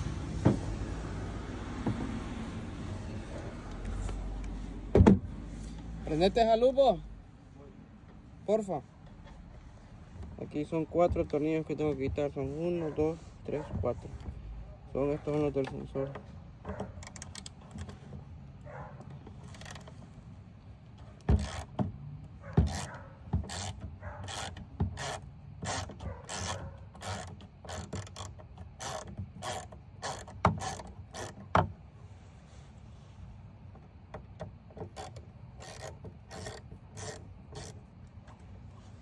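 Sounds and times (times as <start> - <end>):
hand ratchet clicking: 17.0 - 18.0, 19.4 - 19.9, 21.2 - 21.8, 22.6 - 31.4, 34.9 - 37.8
tool knocking: 21.3 - 26.1.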